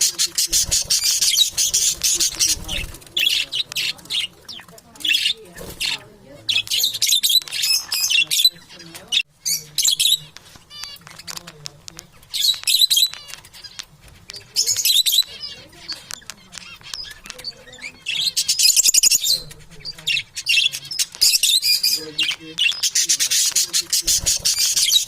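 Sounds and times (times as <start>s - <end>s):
parrots chirping and chattering: 0.0s - 25.0s
sharp clicks: 10.3s - 14.4s, 15.0s - 17.6s.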